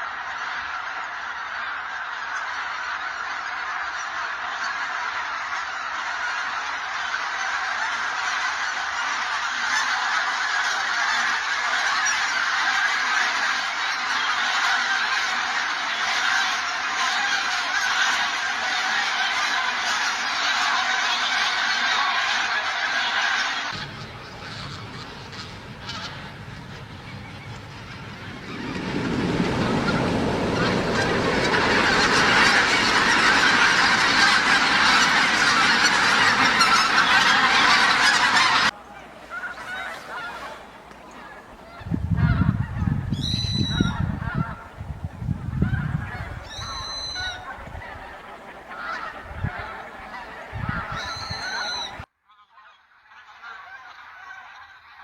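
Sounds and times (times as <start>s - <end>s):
geese honking: 0.0s - 55.0s
high-pitched goose calls: 0.0s - 55.0s
low rumbling noise: 23.7s - 39.1s.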